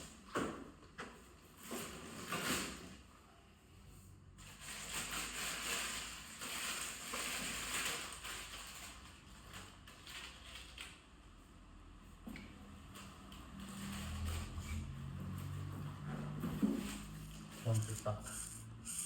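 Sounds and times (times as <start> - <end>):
packaging crinkling and rustling: 4.5 - 11.0, 16.8 - 19.0.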